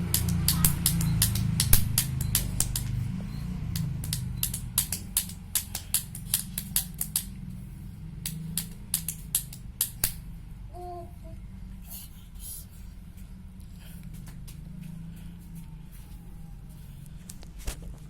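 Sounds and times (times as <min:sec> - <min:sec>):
hard objects clicking and tapping: 0:00.0 - 0:03.0, 0:03.7 - 0:07.4, 0:08.2 - 0:10.2
steady low hum: 0:00.0 - 0:18.0.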